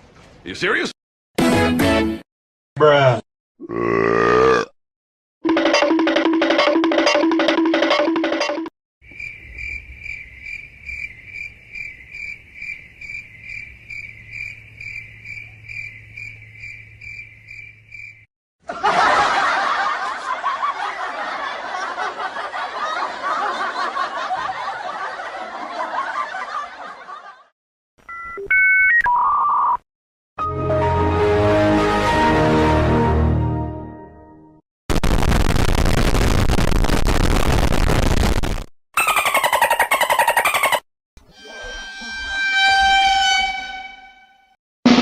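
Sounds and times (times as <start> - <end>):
crickets chirping: 9.0 - 18.3
crowd laughter: 18.6 - 27.5.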